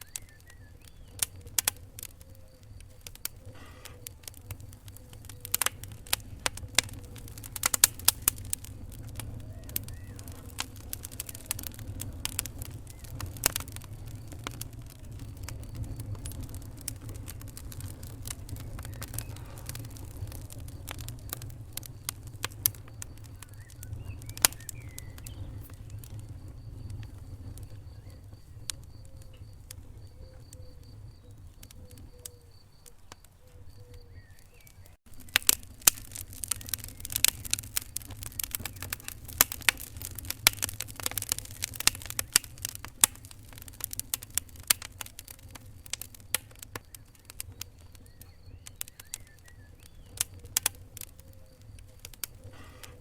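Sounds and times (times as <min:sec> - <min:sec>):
low rumble of flame: 0:00.0 - 0:53.0
wood fire crackling and popping: 0:00.0 - 0:53.0.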